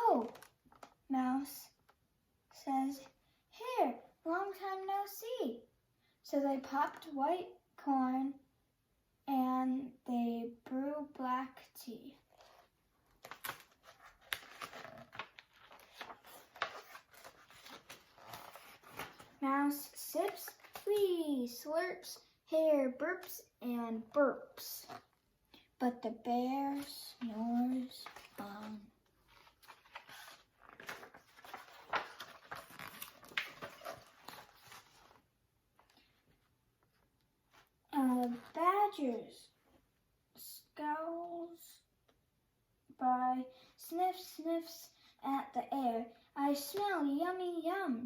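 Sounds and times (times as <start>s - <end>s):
paper rustling: 0.0s - 1.0s, 12.3s - 20.9s, 26.7s - 36.5s
book pages clicking and tapping: 13.2s - 19.4s, 26.7s - 35.2s.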